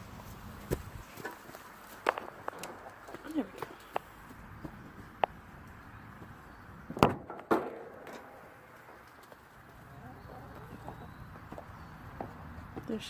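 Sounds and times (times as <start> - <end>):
hens clucking softly: 9.8 - 11.1.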